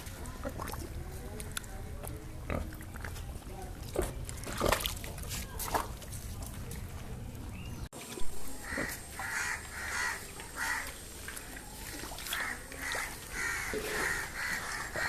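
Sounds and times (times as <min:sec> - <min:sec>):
harsh animal calls: 0:08.6 - 0:11.0, 0:12.3 - 0:15.0.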